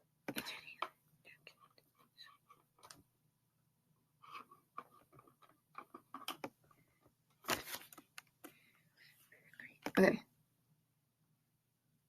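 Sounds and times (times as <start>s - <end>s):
keyboard and mouse clicks: 2.5s - 3.0s, 4.8s - 6.6s.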